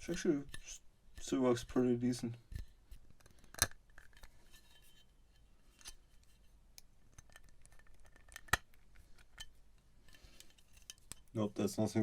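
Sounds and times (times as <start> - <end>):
light ticks and scrapes: 0.0 - 6.5.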